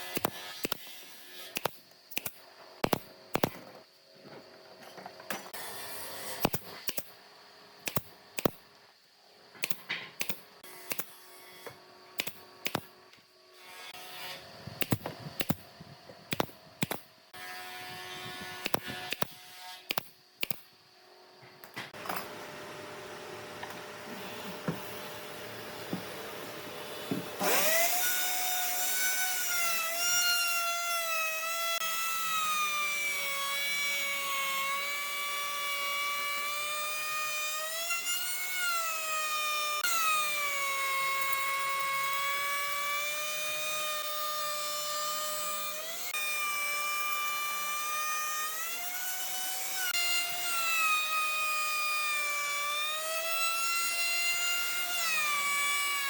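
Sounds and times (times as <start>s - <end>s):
power tool whining: 21.9s - 56.0s.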